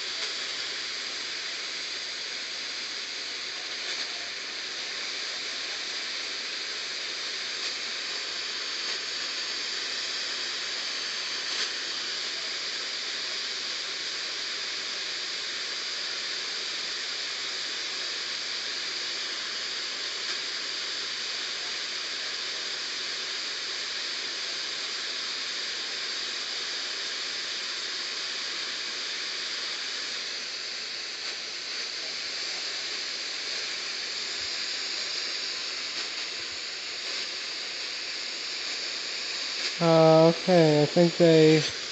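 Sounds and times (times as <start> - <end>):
radio static hiss: 0.0 - 41.9.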